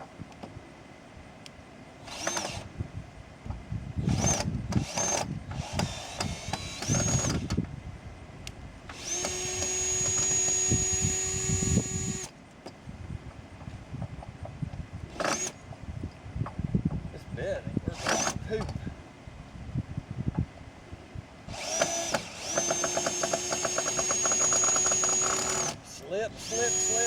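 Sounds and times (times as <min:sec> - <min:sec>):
power drill driving screws: 0:02.0 - 0:02.7, 0:04.0 - 0:07.6, 0:08.9 - 0:12.3, 0:15.1 - 0:15.6, 0:18.0 - 0:18.4, 0:21.5 - 0:27.0.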